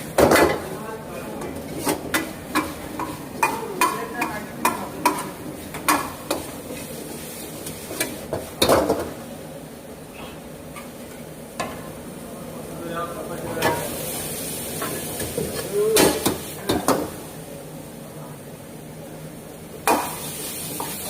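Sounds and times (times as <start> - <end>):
meat sizzling in a pan: 1.6 - 9.2, 13.7 - 17.4, 19.7 - 21.0.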